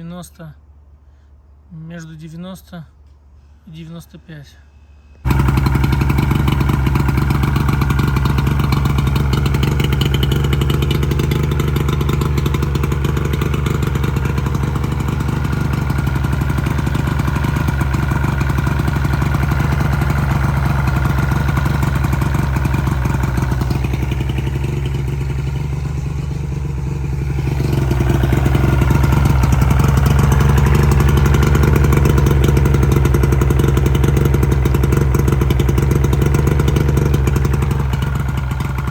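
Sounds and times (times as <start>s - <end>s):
outboard motor running: 5.2s - 38.9s.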